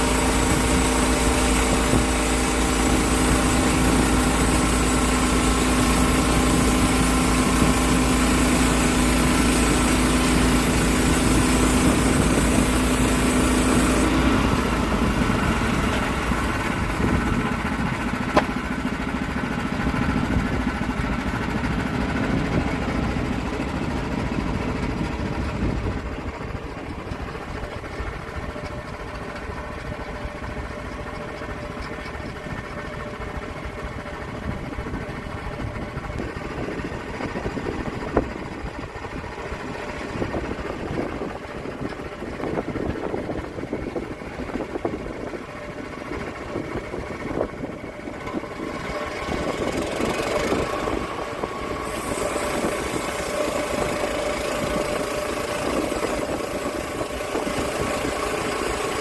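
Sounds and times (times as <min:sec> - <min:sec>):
saw engine running: 0:00.0 - 0:59.0
strong hiss: 0:49.8 - 0:59.0.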